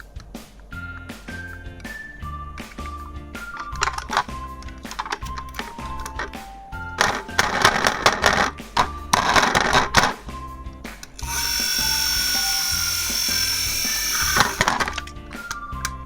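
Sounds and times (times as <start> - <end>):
background music with steady beat: 0.0 - 16.0
steady high whir: 11.2 - 14.8.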